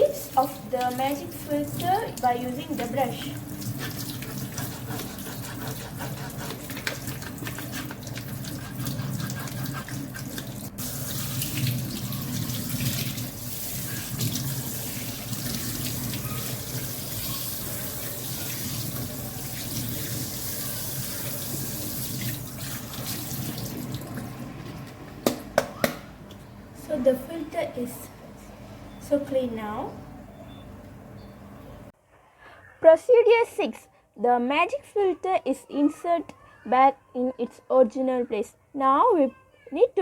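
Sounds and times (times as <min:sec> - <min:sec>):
brush scrubbing filter: 0:00.0 - 0:20.2
tap water running into sink: 0:00.1 - 0:24.3.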